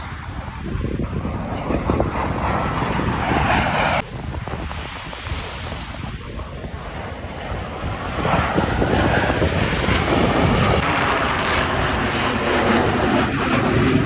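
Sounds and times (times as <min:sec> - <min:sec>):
jets flying over: 0:00.0 - 0:14.0.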